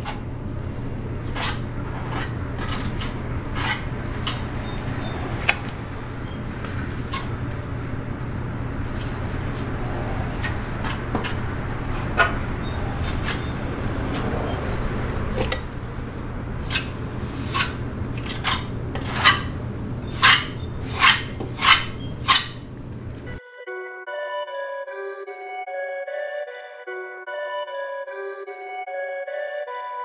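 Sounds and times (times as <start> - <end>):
hand sanding car body: 0.0 - 23.4
steady low hum: 0.0 - 23.4.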